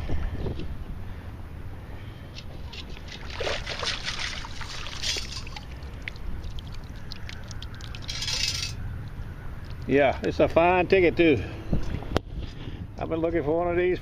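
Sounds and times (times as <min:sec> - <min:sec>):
wind rumble on microphone: 0:00.0 - 0:01.3, 0:11.6 - 0:13.2.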